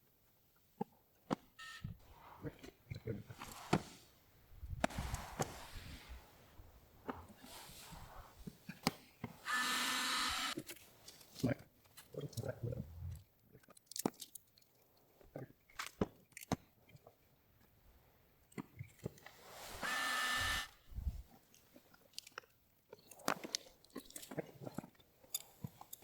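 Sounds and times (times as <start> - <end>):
tool rasp: 9.4 - 10.6, 19.6 - 20.8.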